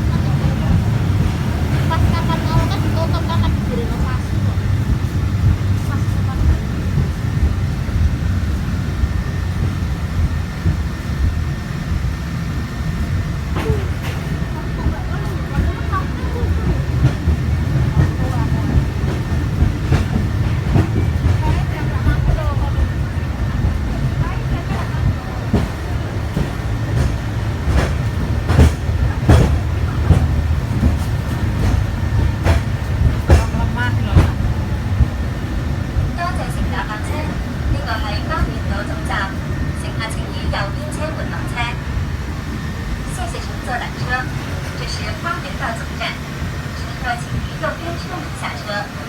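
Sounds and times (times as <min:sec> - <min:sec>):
funicular car rumbling on track: 0:00.0 - 0:49.0.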